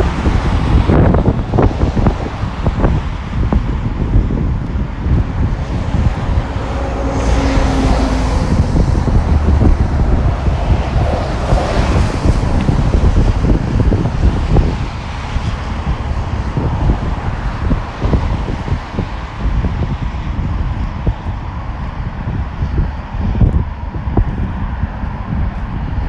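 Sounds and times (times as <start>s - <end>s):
cars passing on wet road: 0.0s - 22.1s
wind buffeting microphone: 0.0s - 26.0s.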